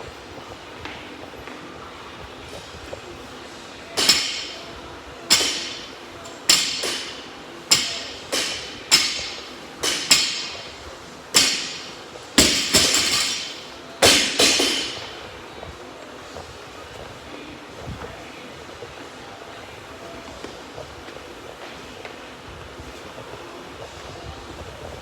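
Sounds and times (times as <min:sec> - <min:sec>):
barbell clanking on floor: 0:05.3 - 0:15.2.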